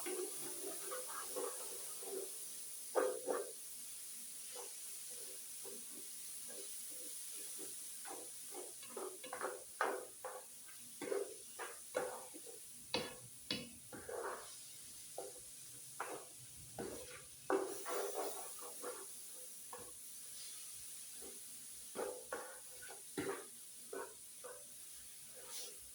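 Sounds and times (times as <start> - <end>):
steady sizzle: 0.0 - 25.9
metal spatulas scraping griddle: 13.9 - 14.6, 16.0 - 19.9, 22.0 - 24.6.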